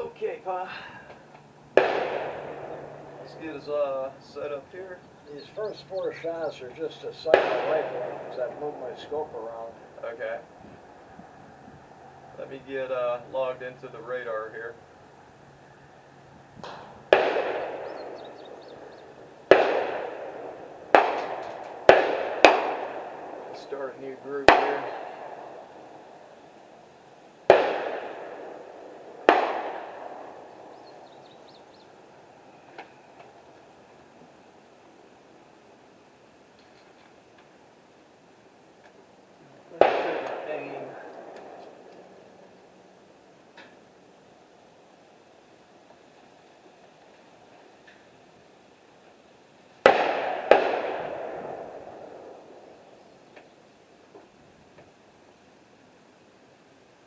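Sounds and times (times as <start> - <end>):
rifle shots echoing: 1.7 - 10.4, 16.6 - 33.1, 39.7 - 43.3, 49.8 - 53.2.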